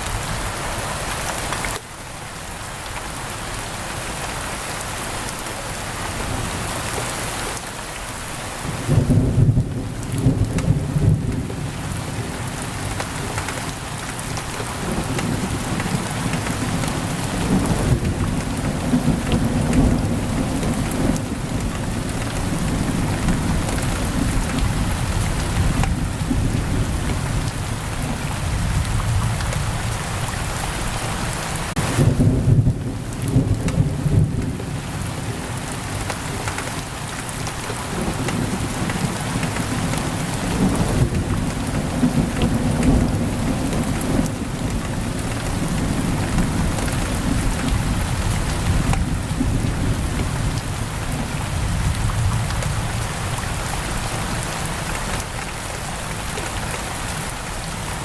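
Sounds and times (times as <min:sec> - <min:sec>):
heavy rain against a window: 0:00.0 - 0:58.0
rolling thunder: 0:08.7 - 0:11.7, 0:31.8 - 0:35.4.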